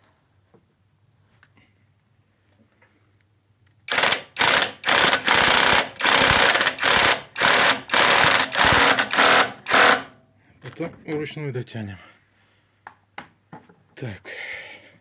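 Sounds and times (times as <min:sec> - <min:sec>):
impact wrench hammering: 0:03.9 - 0:10.1.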